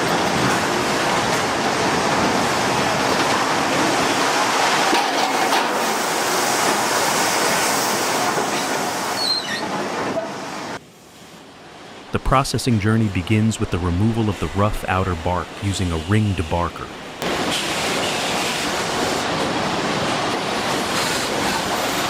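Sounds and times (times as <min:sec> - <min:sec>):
brief high squeaks: 0:09.2 - 0:09.7.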